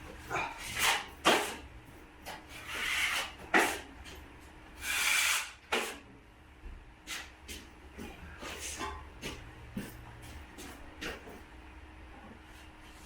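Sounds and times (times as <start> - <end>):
drywall knife scraping compound: 0.4 - 1.6, 2.3 - 3.9, 4.8 - 6.0.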